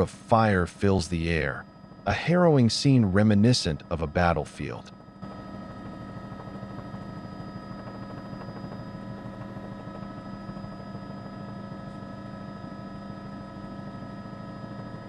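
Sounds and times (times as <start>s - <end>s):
steady mechanical drone: 0.0s - 15.0s.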